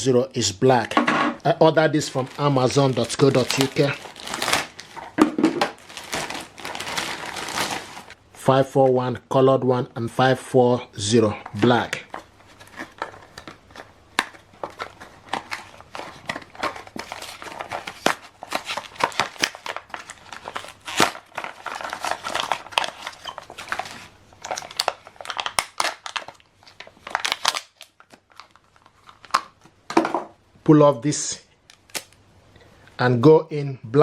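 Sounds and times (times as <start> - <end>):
packaging crinkling and tearing: 1.7 - 8.2, 11.6 - 29.7.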